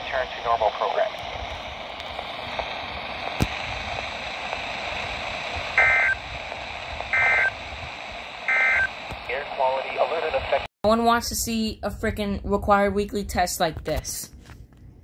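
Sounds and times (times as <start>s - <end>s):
radio static hiss: 0.0s - 10.7s
digital data bursts: 7.1s - 7.6s.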